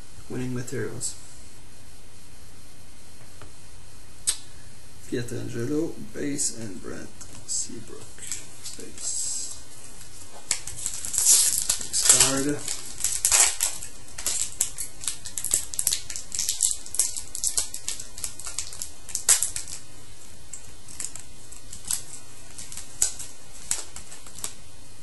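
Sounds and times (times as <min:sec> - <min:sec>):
foil pack crinkling: 0:08.0 - 0:19.9, 0:20.5 - 0:24.6
cards clicking: 0:10.5 - 0:19.8.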